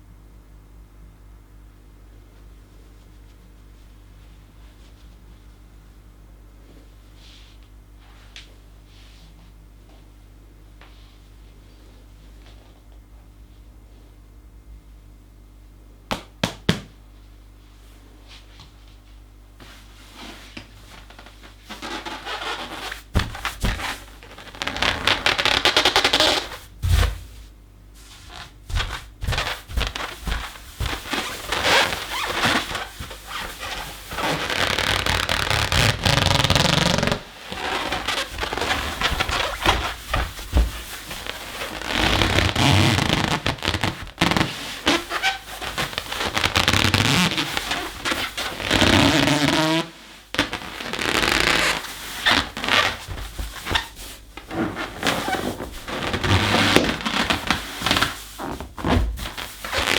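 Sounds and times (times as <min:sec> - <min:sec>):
balloon squeaking and scraping: 0:21.8 - 0:27.2, 0:28.3 - 0:59.9.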